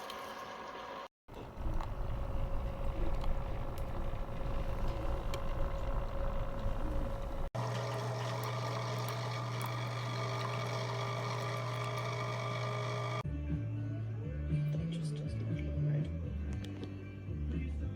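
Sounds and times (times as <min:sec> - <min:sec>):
coffee maker pump humming: 0:00.0 - 0:13.2
water running: 0:00.0 - 0:13.2.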